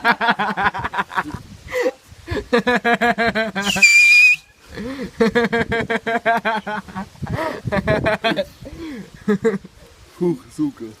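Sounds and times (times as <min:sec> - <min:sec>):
person whistling high note: 0:03.6 - 0:04.5.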